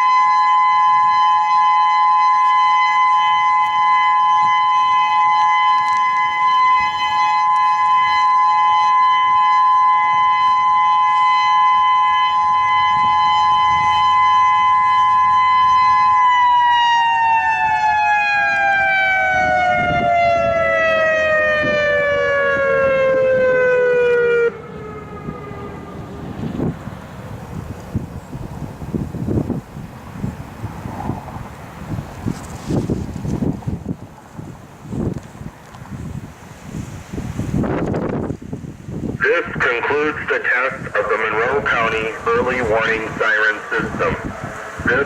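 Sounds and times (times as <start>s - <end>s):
two-tone electronic siren: 0.0s - 27.0s, 39.2s - 45.0s
faint wind noise: 2.2s - 45.0s.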